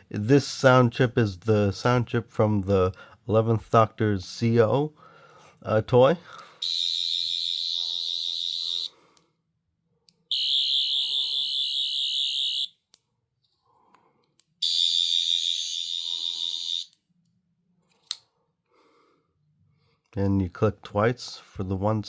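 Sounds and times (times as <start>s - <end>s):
toy screwdriver warbling whine: 14.6s - 17.0s.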